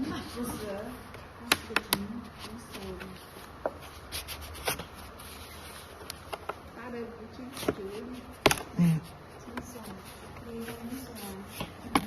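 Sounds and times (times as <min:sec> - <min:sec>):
plastic tool prying plastic: 0:08.4 - 0:08.7.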